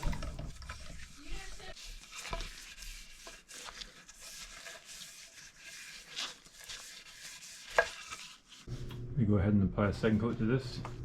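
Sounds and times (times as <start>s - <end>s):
rag rubbing wooden board: 0.0s - 8.8s.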